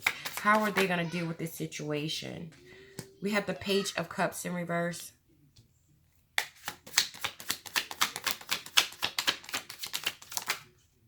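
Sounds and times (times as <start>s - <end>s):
cards being shuffled: 0.0s - 0.9s, 6.4s - 10.7s.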